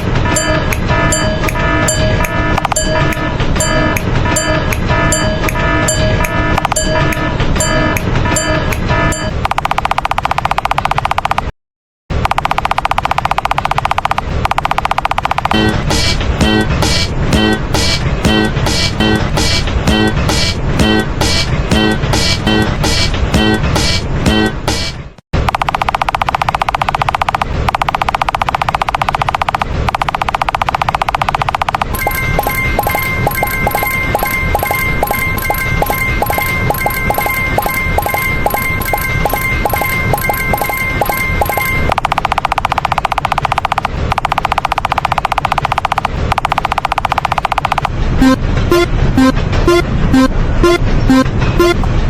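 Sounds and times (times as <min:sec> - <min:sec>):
fast pulsing tone: 0:00.0 - 0:11.4, 0:12.2 - 0:17.6, 0:25.5 - 0:51.9
horn-like toot: 0:15.5 - 0:22.8
musical sound: 0:15.5 - 0:23.6, 0:31.9 - 0:42.0, 0:48.2 - 0:51.9.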